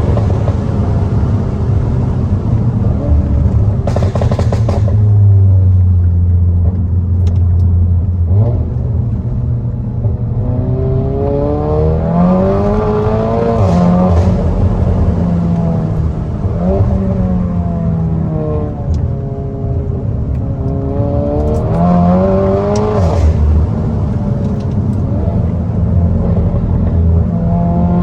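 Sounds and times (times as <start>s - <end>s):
car engine revving: 0.0s - 28.0s
exhaust cracks: 3.1s - 5.5s, 12.0s - 19.2s.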